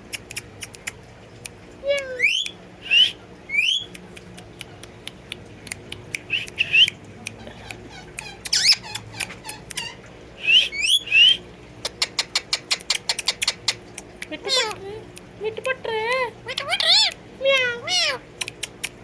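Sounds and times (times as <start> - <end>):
parrot squawking: 1.8 - 3.9, 6.2 - 18.9.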